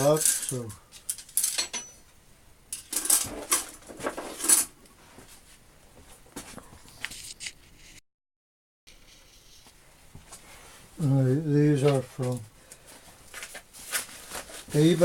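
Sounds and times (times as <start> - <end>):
metallic tool clinks and clatters: 0.0 - 2.0
tool handling noise: 0.0 - 2.1, 2.7 - 4.8.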